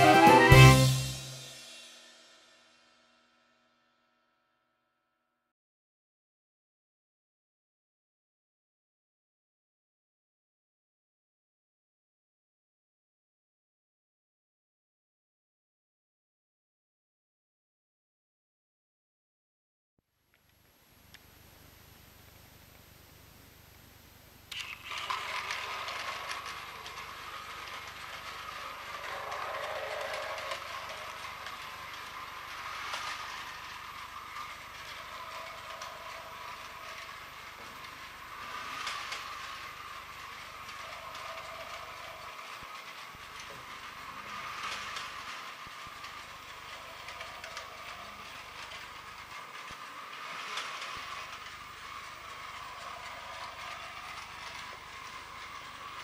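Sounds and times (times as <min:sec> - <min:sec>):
toy train gearbox whine: 0:00.0 - 0:02.3, 0:24.5 - 0:56.0
clatter of toy train wheels: 0:24.5 - 0:56.0.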